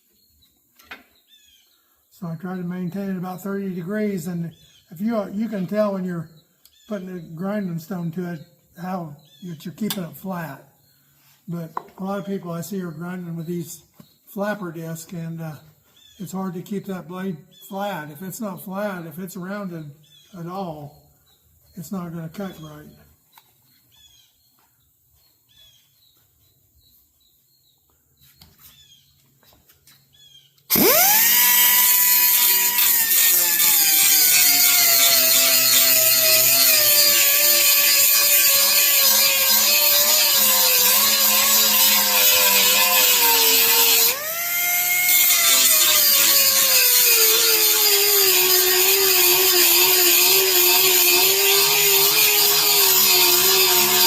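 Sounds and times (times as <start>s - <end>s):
electric grinder whining: 30.7s - 54.0s.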